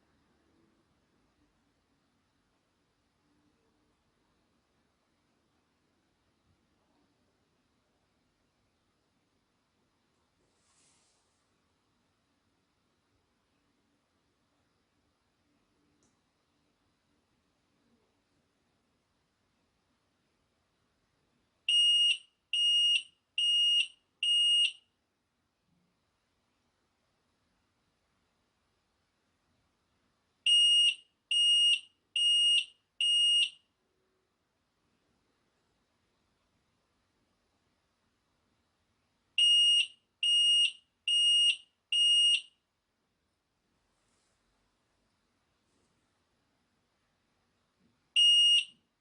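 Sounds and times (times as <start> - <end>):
carbon monoxide alarm beeps: 21.7 - 24.8, 30.5 - 33.6, 39.4 - 42.6, 48.2 - 48.8.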